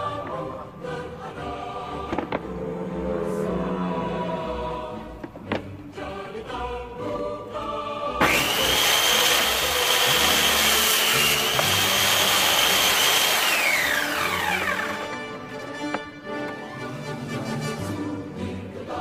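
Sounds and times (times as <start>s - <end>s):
background music: 0.0s - 19.0s
circular saw whining: 8.2s - 15.3s.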